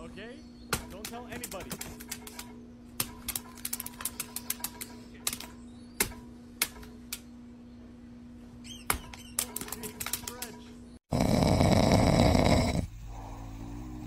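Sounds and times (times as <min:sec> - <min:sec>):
sharp clicks and taps: 0:00.8 - 0:07.3, 0:09.1 - 0:10.5.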